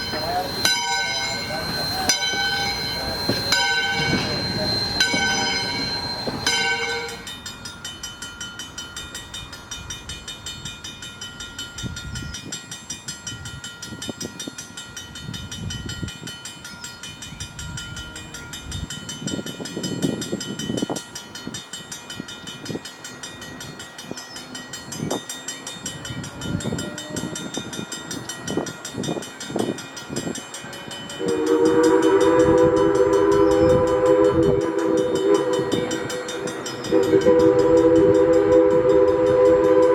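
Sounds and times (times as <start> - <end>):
steam locomotive whistle: 0.0 - 7.3, 31.0 - 39.9
train running rhythmic beat: 0.0 - 39.9.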